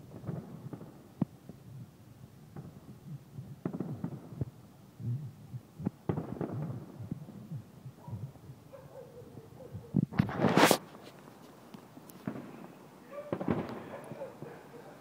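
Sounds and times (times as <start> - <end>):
distant fireworks bursting: 0.0 - 8.5, 12.2 - 15.0.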